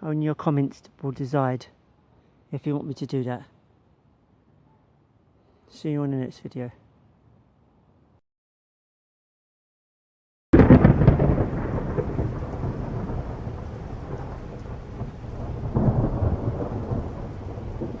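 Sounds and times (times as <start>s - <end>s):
thunder crack and rumble: 10.6s - 18.0s.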